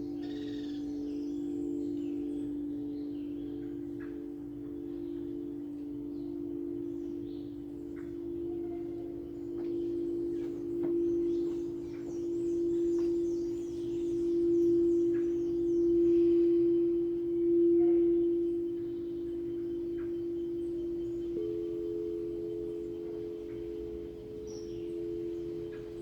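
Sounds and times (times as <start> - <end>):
singing bowl ringing: 0.0 - 26.0.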